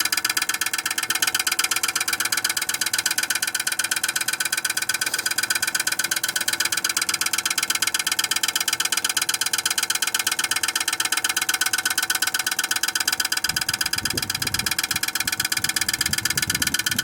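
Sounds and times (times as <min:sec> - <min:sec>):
heat pump rattling: 0:00.0 - 0:17.0.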